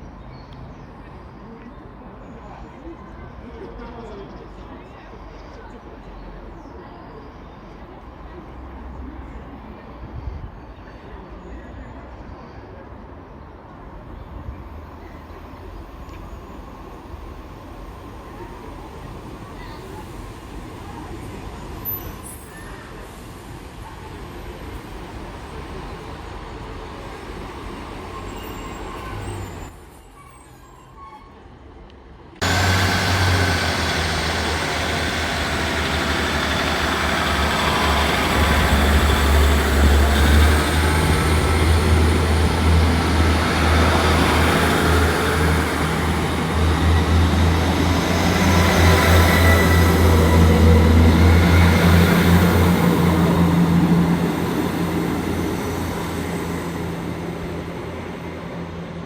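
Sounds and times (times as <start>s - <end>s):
train diesel engine drone: 32.2s - 59.0s.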